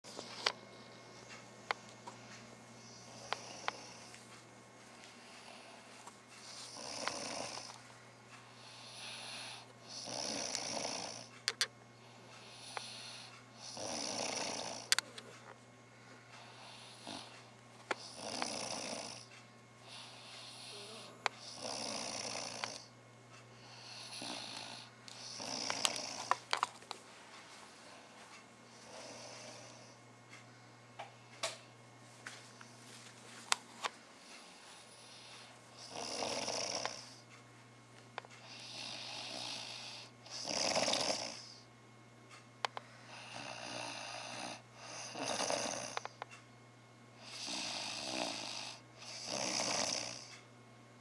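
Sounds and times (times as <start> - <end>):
person snoring: 2.8 - 4.2, 5.3 - 7.8, 8.6 - 11.4, 12.4 - 15.0, 16.4 - 17.4, 18.0 - 22.9, 23.6 - 26.4, 28.7 - 30.0, 34.7 - 37.2, 38.4 - 41.7, 43.0 - 46.2, 47.2 - 50.3.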